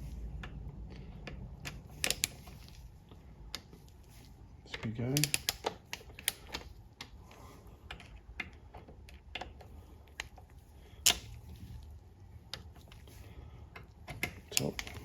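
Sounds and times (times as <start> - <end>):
torque wrench and ratchet clicks: 5.2 - 6.6.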